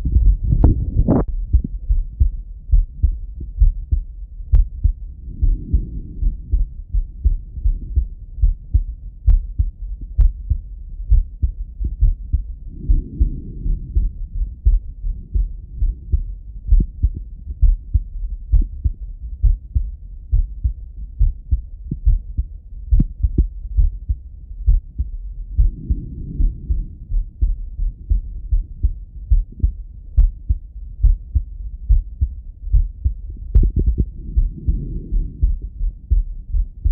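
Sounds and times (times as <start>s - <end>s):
heartbeat through stethoscope: 0.0s - 36.9s
soft breath sounds: 4.5s - 9.4s, 12.0s - 17.2s, 25.4s - 30.3s, 33.6s - 36.9s.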